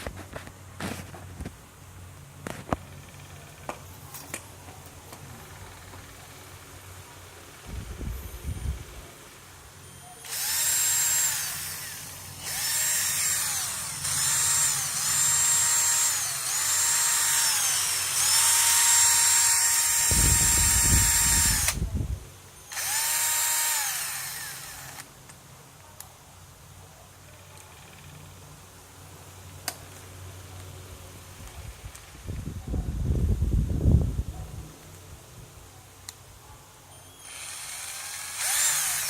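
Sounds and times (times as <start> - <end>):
cordless drill whining: 10.2 - 21.9, 22.7 - 25.1, 37.0 - 39.0.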